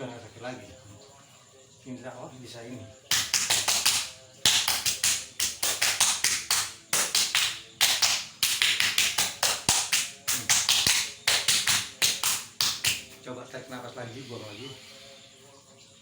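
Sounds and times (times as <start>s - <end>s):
hands slapping on body: 3.1s - 13.2s.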